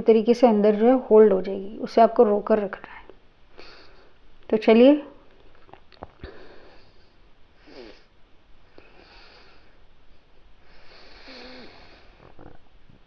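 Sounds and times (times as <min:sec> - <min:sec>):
faint breathy hisses: 0:03.5 - 0:04.2, 0:06.2 - 0:09.8, 0:10.6 - 0:12.4.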